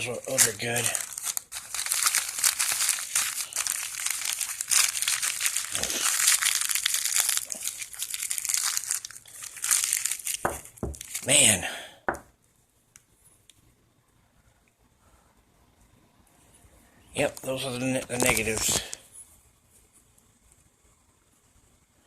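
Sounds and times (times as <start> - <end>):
plastic packaging crinkling: 0.0 - 11.4, 17.2 - 19.1.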